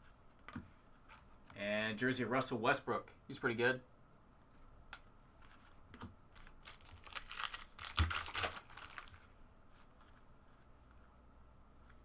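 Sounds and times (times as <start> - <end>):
wrapper tearing and crinkling: 6.4 - 9.2.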